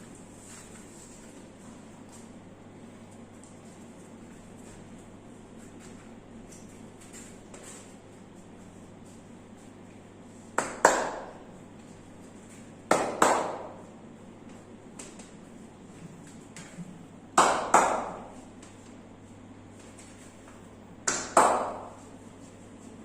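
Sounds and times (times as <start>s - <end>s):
sharp hand slaps: 10.6s - 11.4s, 12.9s - 13.8s, 17.4s - 18.3s, 21.0s - 22.0s.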